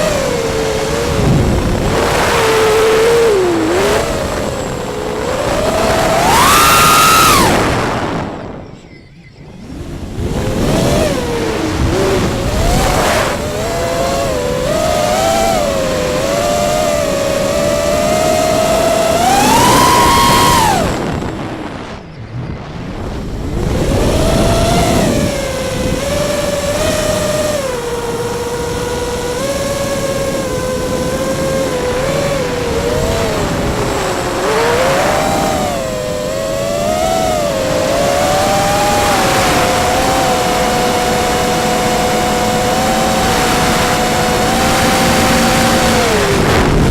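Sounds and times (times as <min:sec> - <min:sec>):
electric motor whine: 0:00.0 - 0:08.6, 0:09.6 - 0:46.9
rush of air: 0:19.6 - 0:25.2.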